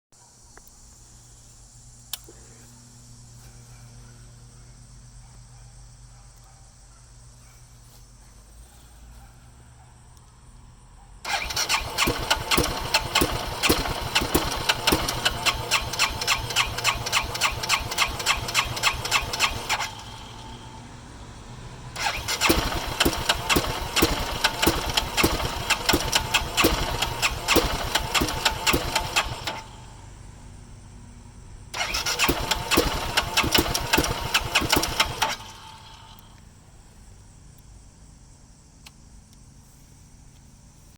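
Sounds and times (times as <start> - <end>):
motorcycle engine cranking and sputtering: 11.2 - 21.0, 21.9 - 30.6, 31.6 - 36.5.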